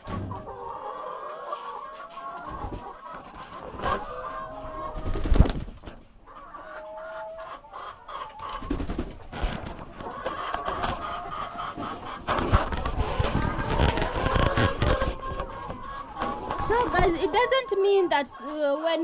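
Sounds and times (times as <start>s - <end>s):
hens clucking: 0.0s - 19.0s.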